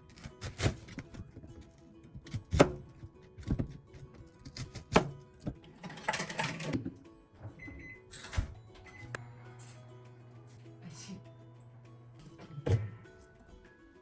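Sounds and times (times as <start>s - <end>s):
soft background music: 0.0s - 14.0s.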